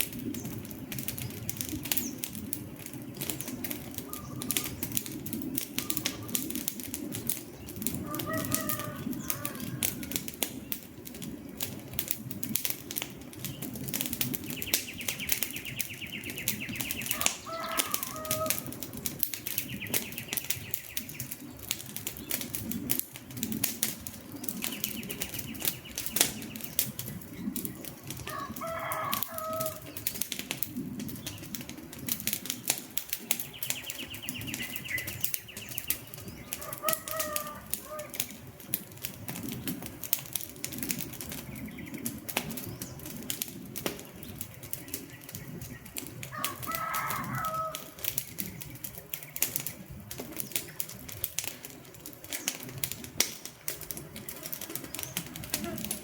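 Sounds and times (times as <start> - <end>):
wood fire crackling: 0.0 - 56.0
bird clucking: 4.1 - 4.9, 8.0 - 10.1, 15.6 - 18.7, 33.6 - 38.2, 46.3 - 47.9.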